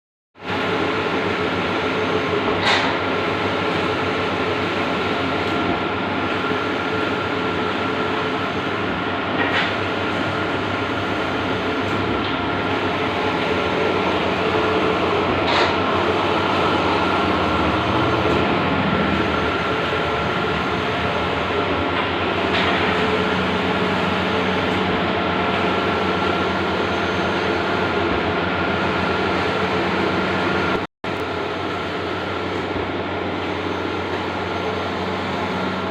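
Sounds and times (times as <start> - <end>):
printer mechanical whir: 0.4 - 35.9.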